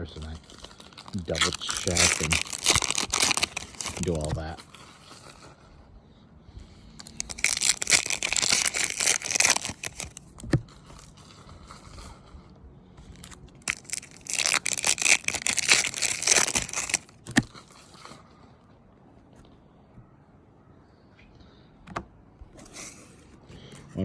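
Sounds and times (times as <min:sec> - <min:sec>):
crinkly plastic packaging handled: 0:00.0 - 0:05.8, 0:07.0 - 0:12.4, 0:13.0 - 0:19.4.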